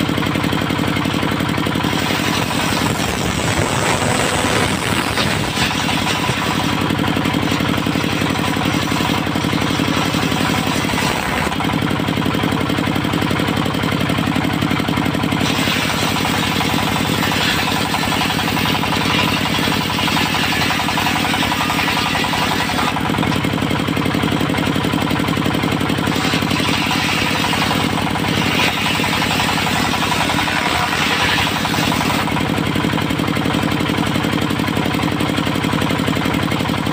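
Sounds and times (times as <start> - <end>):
diesel engine running: 0.0 - 36.9
saw blade cutting wood: 0.6 - 11.9, 15.3 - 23.7, 25.9 - 33.0.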